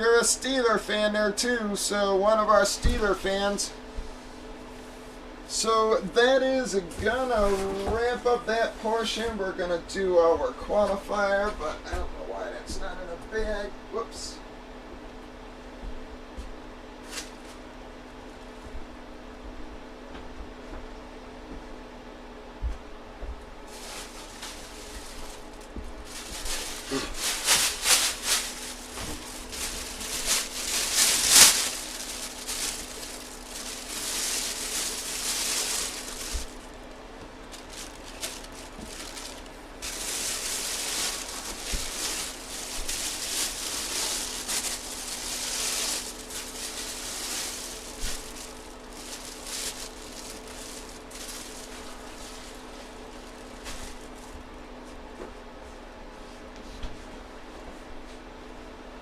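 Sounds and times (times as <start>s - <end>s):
faint steady hum: 0.0s - 59.0s
plastic packaging rustling: 23.6s - 54.4s.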